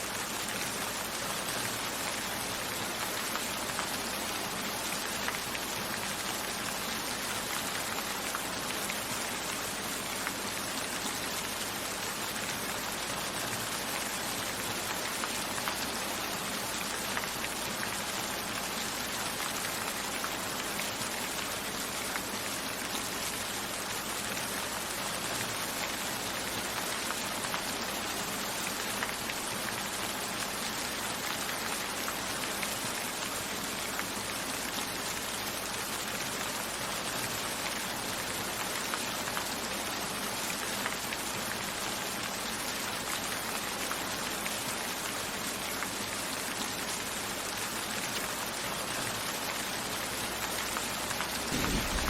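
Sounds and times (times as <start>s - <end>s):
steady rain falling: 0.0s - 52.0s
low rumble: 51.5s - 52.0s.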